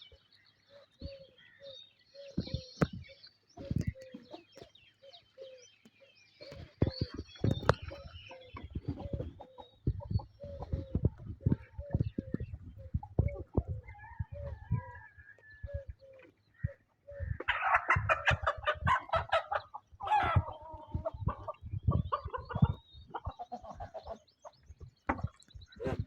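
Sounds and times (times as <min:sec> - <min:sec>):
fowl clucking: 0:15.8 - 0:24.3
fowl calling loudly: 0:17.3 - 0:21.6.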